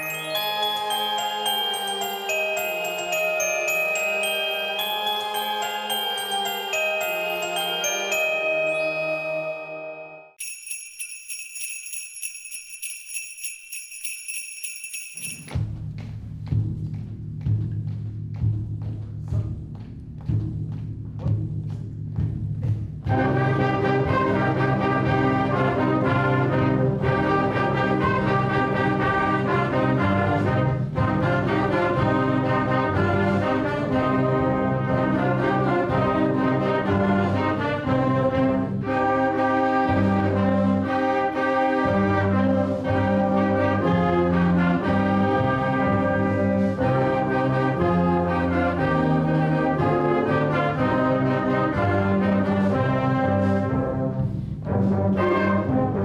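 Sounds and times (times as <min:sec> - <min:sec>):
brass band playing: 0:23.2 - 0:56.0.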